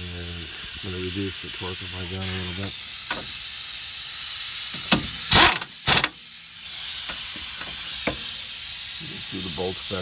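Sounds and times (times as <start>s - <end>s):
steady hiss: 0.0s - 10.0s
impact gun bursts: 4.8s - 6.2s.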